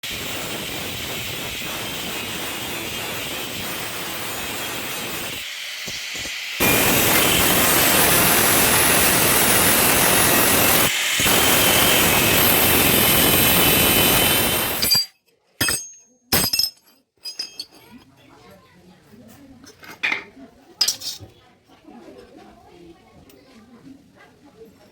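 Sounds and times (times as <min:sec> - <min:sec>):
angle grinder grinding: 0:00.0 - 0:15.1
sharp metallic clinks: 0:14.7 - 0:17.9.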